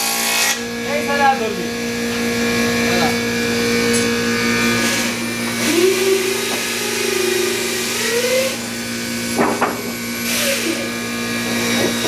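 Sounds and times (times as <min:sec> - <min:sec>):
electric planer cutting wood: 0:00.0 - 0:12.0
sharp knocks: 0:09.3 - 0:10.2.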